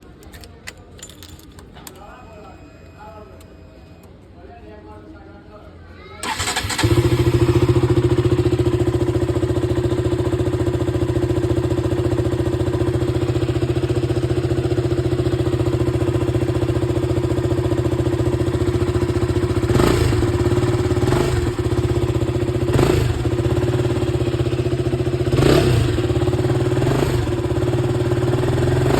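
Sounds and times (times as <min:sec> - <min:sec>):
motorcycle engine idling: 0:06.2 - 0:28.9.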